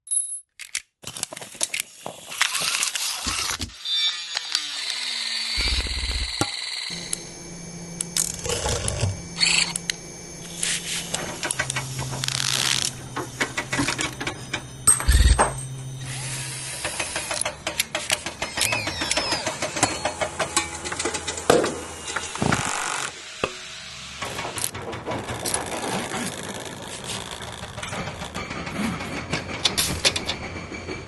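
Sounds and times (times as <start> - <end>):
power tool motors whining: 1.7 - 28.4
sharp clicks clanks and knocks: 8.0 - 16.0, 16.7 - 22.8, 24.2 - 31.0.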